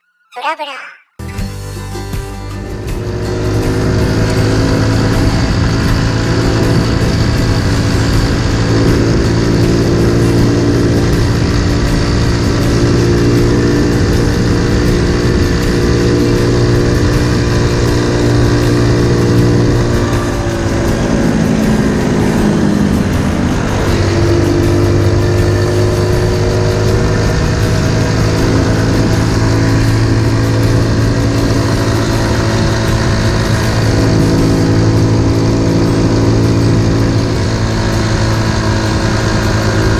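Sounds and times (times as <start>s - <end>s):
motorbike engine running: 2.0s - 39.9s.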